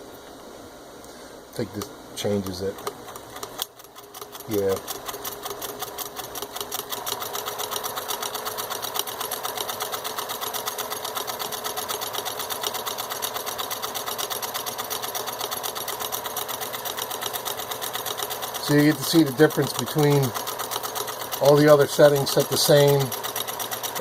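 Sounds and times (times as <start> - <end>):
sewing machine stitching: 2.3 - 24.0.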